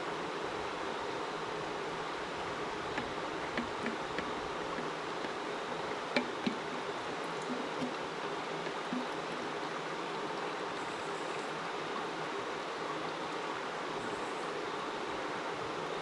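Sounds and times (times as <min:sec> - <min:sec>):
flowing water: 0:00.0 - 0:16.0
faint taps: 0:02.9 - 0:08.0, 0:08.6 - 0:09.2.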